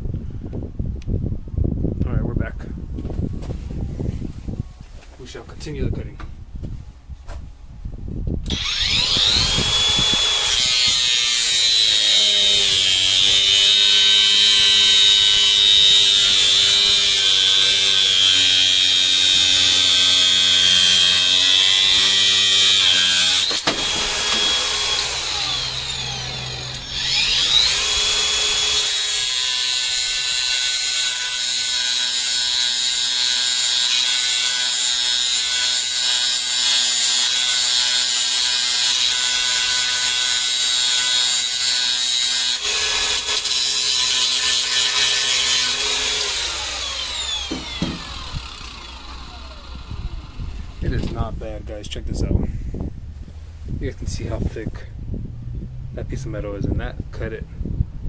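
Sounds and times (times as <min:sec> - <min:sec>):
angle grinder cutting metal: 0:08.5 - 0:51.3.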